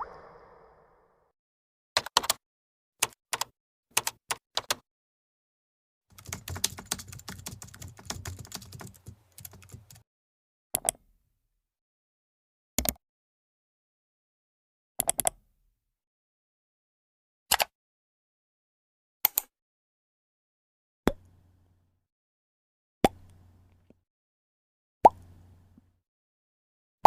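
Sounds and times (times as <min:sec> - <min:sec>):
keyboard typing: 0:02.0 - 0:02.4, 0:03.0 - 0:04.8, 0:06.2 - 0:10.0.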